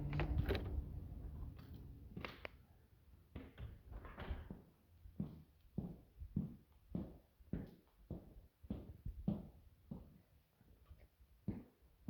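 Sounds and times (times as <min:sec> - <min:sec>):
knocks and clunks: 0:00.0 - 0:02.4.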